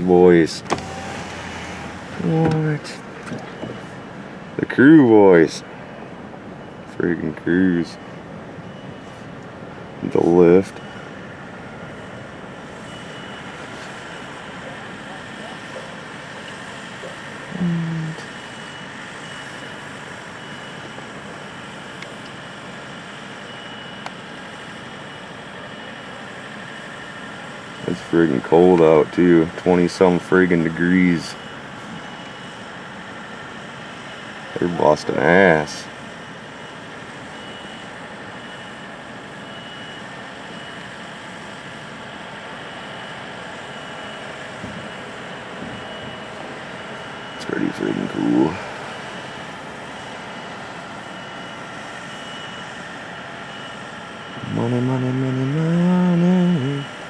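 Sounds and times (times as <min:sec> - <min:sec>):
car running noise: 0:00.0 - 0:26.8, 0:41.5 - 0:56.9
faint high beep: 0:08.0 - 0:09.2, 0:12.8 - 0:14.4, 0:17.6 - 0:22.0, 0:23.4 - 0:24.1, 0:36.6 - 0:41.0, 0:45.7 - 0:46.4, 0:51.0 - 0:57.0.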